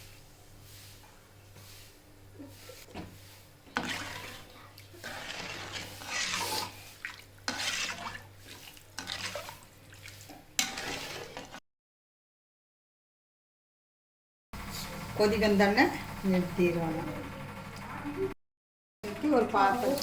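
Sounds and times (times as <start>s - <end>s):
liquid splashing in a pot: 3.7s - 11.6s.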